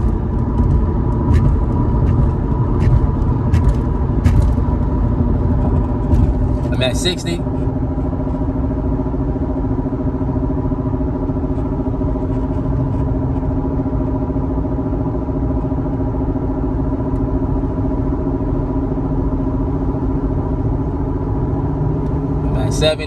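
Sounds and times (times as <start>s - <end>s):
tyre and road rumble: 0.0s - 9.0s
wheel bearing hum: 0.0s - 23.0s.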